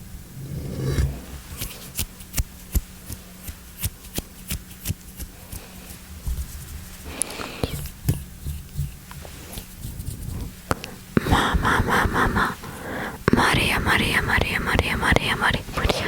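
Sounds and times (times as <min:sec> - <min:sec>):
soft rustling: 0:00.3 - 0:11.0.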